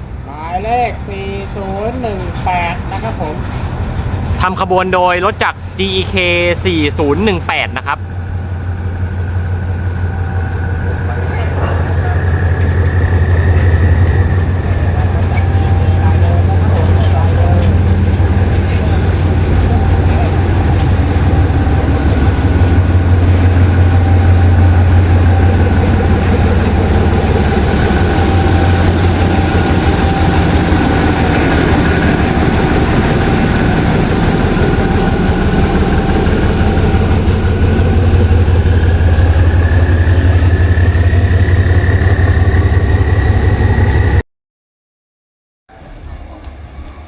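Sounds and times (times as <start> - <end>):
locomotive engine idling: 0.0 - 44.2
faint whine: 7.0 - 44.2.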